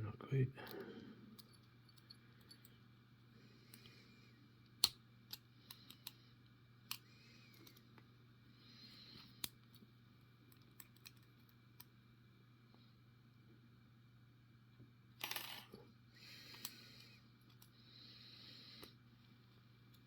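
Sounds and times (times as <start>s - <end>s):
faint low steady hum: 0.0s - 20.0s.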